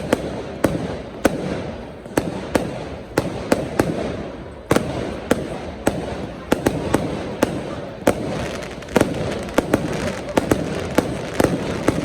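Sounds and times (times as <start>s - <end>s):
fireworks bangs and cracks: 0.0s - 12.0s.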